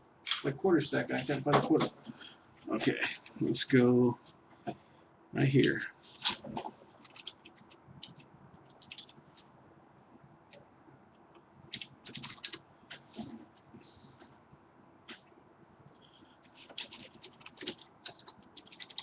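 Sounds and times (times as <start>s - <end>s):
keyboard typing: 6.4s - 9.4s, 11.7s - 13.1s, 16.0s - 19.0s.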